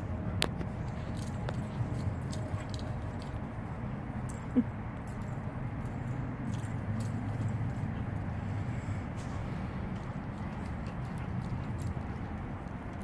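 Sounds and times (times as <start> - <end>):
steady low rumble: 0.0 - 13.0
dog collar tags jingling: 1.0 - 3.5, 4.2 - 8.3, 9.9 - 13.0.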